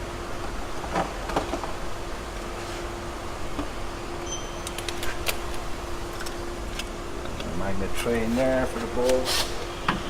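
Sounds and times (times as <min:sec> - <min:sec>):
steady low hum: 0:00.0 - 0:10.0
brief high squeak: 0:04.2 - 0:04.7.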